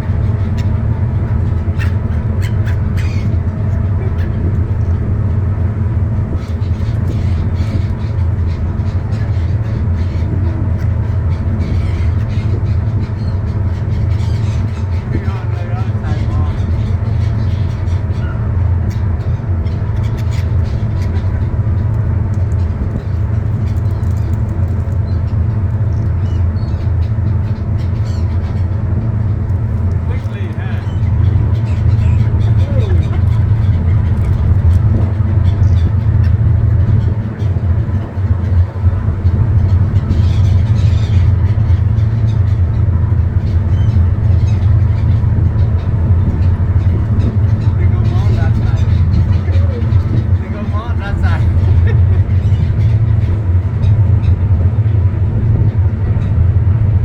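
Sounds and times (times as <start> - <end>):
seagull calls: 0.0 - 56.4
low engine rumble: 0.0 - 57.0.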